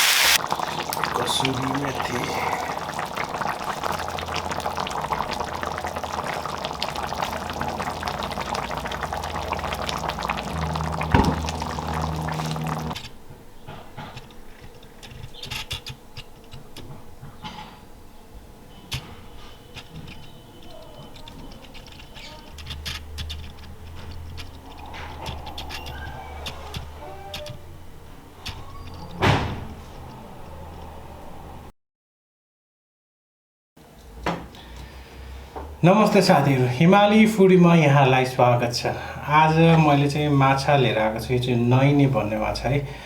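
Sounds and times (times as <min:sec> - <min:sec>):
food crackling in hot pan: 0:00.0 - 0:13.2.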